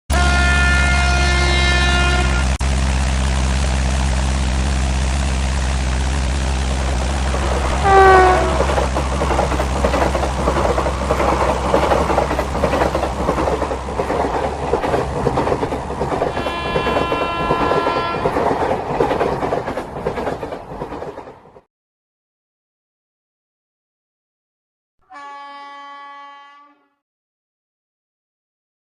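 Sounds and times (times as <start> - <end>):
train horn: 0.1 - 2.6, 7.5 - 8.8, 16.3 - 18.4, 25.0 - 27.0
train locomotive hum: 0.1 - 21.7
wheels clattering over rail joints: 2.7 - 21.6.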